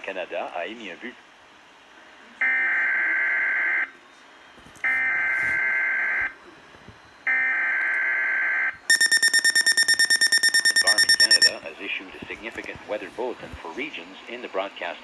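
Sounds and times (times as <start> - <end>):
rapidly pulsing alert tone: 8.9 - 11.6
harsh digital data tone: 8.9 - 13.0.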